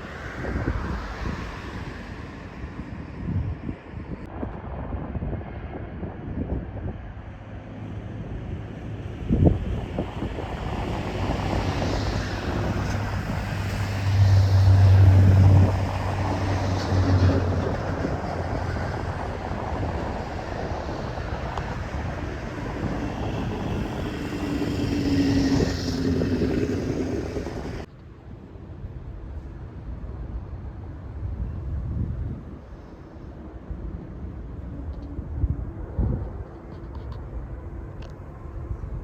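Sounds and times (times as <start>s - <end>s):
passing traffic rumble: 0.0s - 39.0s.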